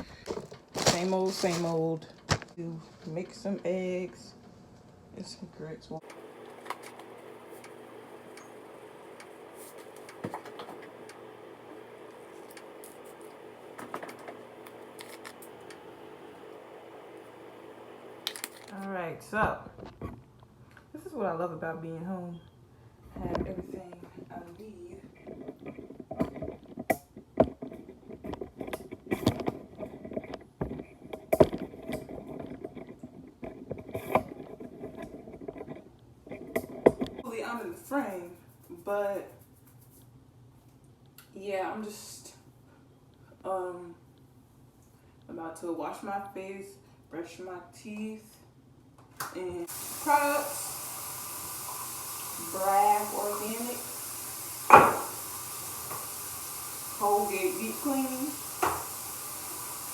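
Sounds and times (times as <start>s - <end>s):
small objects knocking and clattering: 0.0s - 3.1s, 18.2s - 18.8s
steady indoor hum: 0.0s - 59.9s
clicks and knocks of objects handled: 18.3s - 18.9s.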